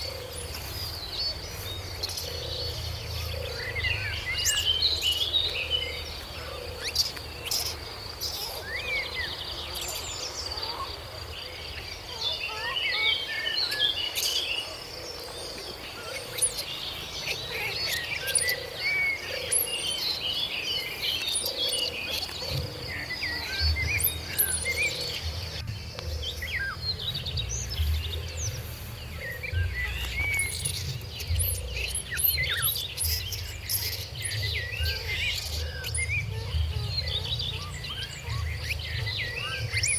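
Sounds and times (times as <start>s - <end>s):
low rumble: 23.7s - 33.6s.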